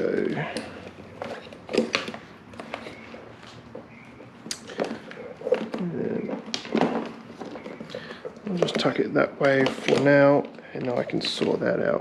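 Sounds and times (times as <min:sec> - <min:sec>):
motorcycle parts clicking and knocking: 0:00.0 - 0:11.8.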